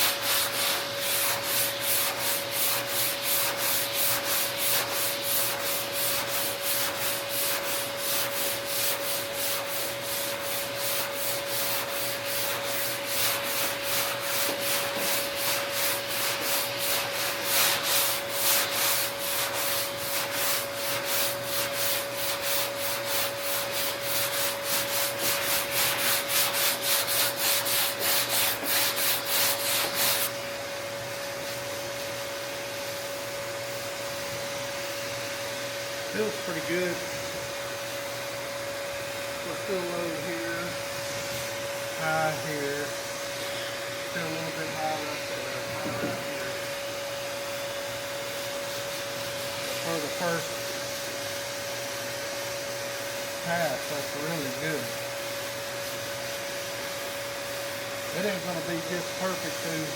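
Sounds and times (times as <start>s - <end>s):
sanding block rasping: 0.0s - 30.4s, 58.2s - 59.9s
steady shop hum: 0.0s - 59.9s.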